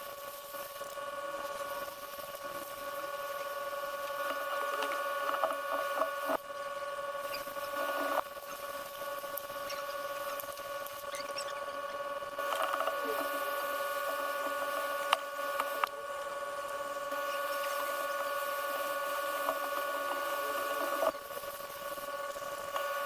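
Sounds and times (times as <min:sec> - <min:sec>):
electrical hum: 0:00.0 - 0:23.0
light scratching and clicking: 0:03.4 - 0:06.4, 0:12.4 - 0:13.4.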